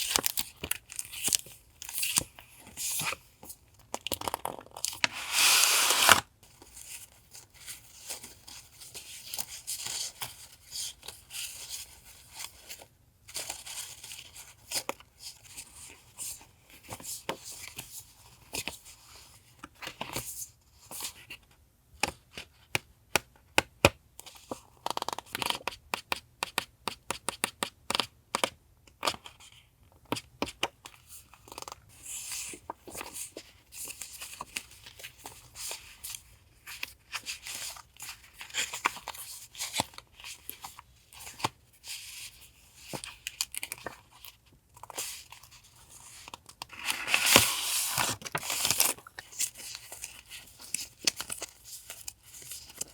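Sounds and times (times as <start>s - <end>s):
paper crinkling and rustling: 4.1s - 20.3s, 31.4s - 52.9s.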